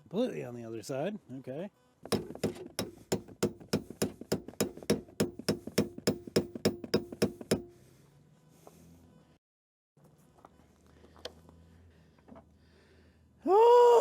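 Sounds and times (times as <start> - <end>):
hammer striking steel bar: 2.1 - 7.9.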